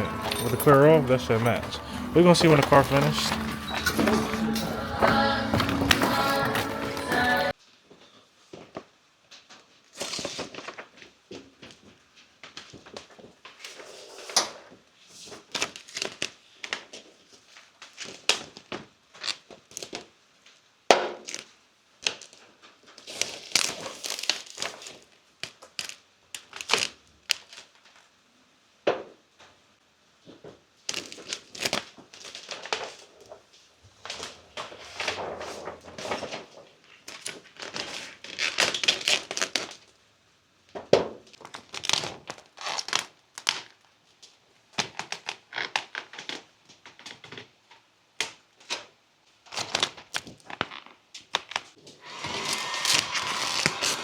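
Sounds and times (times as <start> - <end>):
plastic film crinkling: 15.2 - 20.2, 21.2 - 28.1, 30.8 - 40.0, 41.2 - 47.1, 49.4 - 54.0.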